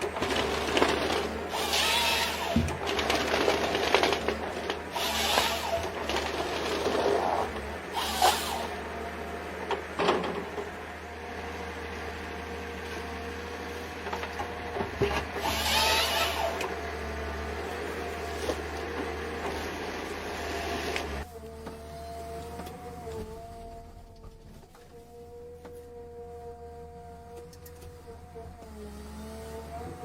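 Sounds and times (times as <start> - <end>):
excavator engine hum: 0.0 - 30.0
hydraulic whine: 0.0 - 30.0
hissing scraping bursts: 4.9 - 8.8.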